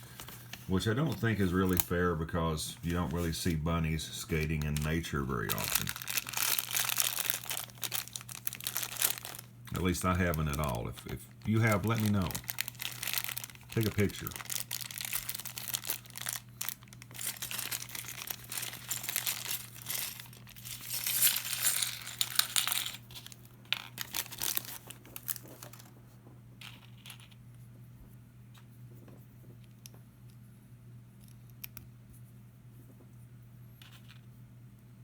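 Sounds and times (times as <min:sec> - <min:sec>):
plastic packaging crinkling: 0:00.0 - 0:26.0
plastic pieces clicking and clattering: 0:04.4 - 0:25.9.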